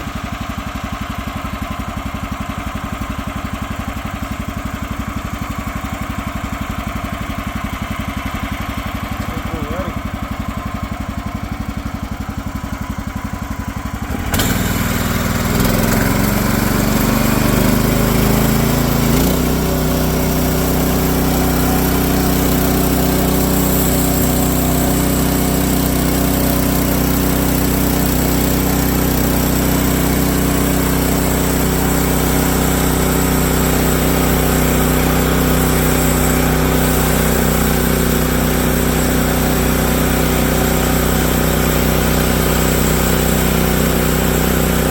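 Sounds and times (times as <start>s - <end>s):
sawmill gasoline engine: 0.0s - 44.9s
saw blade hissing through log: 14.2s - 44.9s.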